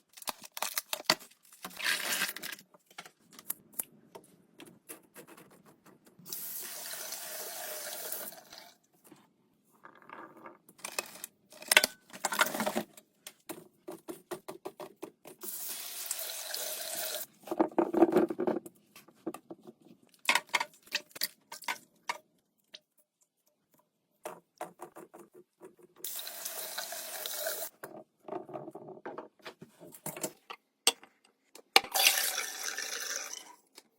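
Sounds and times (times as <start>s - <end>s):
kitchen tap running: 6.2s - 8.8s, 15.4s - 17.3s, 26.0s - 27.7s
produce and containers clattering: 9.8s - 13.0s, 17.4s - 22.2s.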